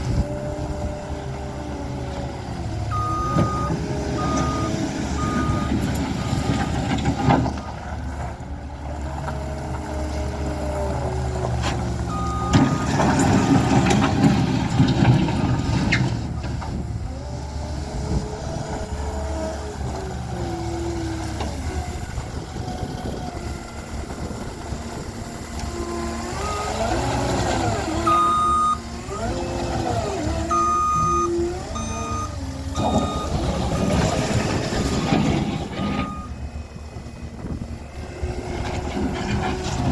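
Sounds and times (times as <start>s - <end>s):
diesel engine revving: 0.0s - 39.9s
backup alarm beeping: 2.9s - 6.4s, 30.5s - 33.4s, 35.8s - 36.5s.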